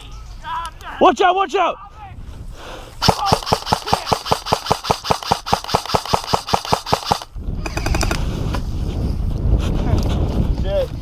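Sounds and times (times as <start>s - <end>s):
airsoft rifle rapid firing: 3.0s - 8.2s.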